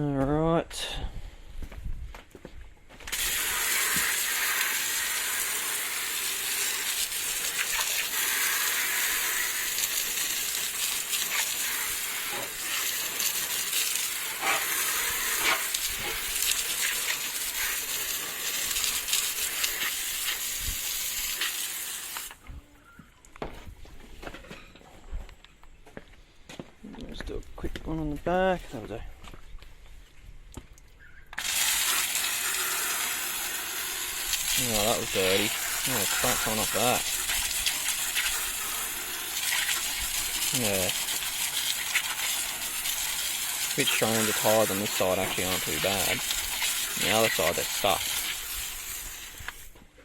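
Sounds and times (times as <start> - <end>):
hose spraying water on car wheel: 3.1 - 22.4, 31.4 - 49.8.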